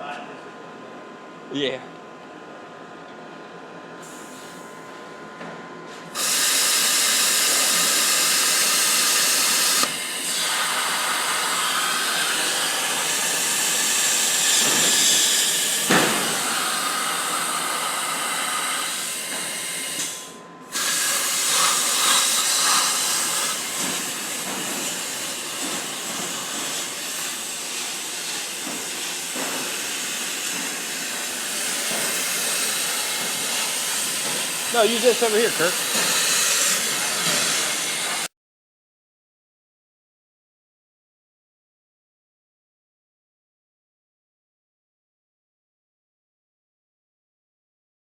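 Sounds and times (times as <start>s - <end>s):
loud hiss from shop equipment: 4.0s - 5.0s, 6.0s - 38.3s.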